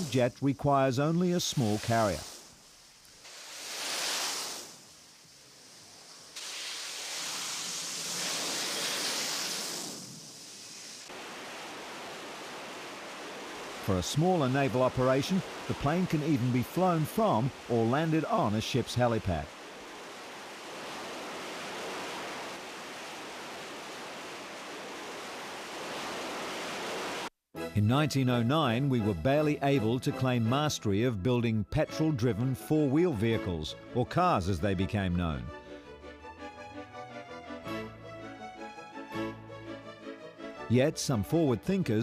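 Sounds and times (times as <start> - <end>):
loud jet engine hiss: 0.0 - 16.2.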